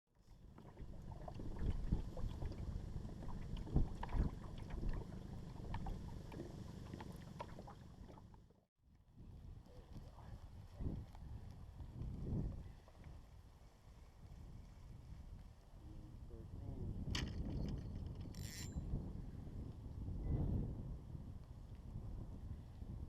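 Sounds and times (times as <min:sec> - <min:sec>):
wind rumbling on microphone: 0:00.2 - 0:08.4, 0:09.1 - 0:23.0
water against boat: 0:00.2 - 0:08.7.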